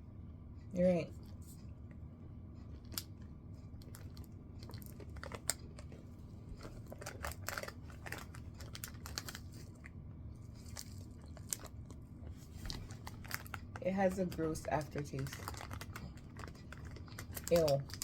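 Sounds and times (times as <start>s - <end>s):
people chewing crunchy snacks: 3.8s - 18.0s.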